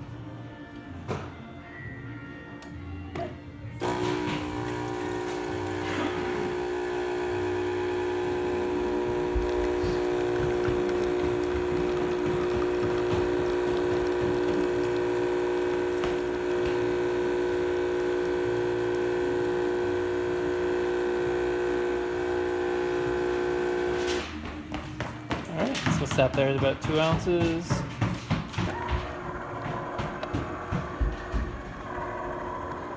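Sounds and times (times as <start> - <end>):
espresso machine pump humming: 3.8 - 24.4, 28.7 - 32.9.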